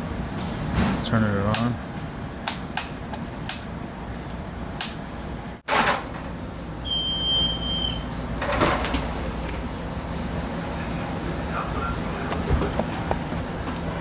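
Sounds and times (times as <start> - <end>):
sharp switch clicks: 2.4 - 3.6, 4.8 - 5.0
electronic beep: 6.8 - 8.0.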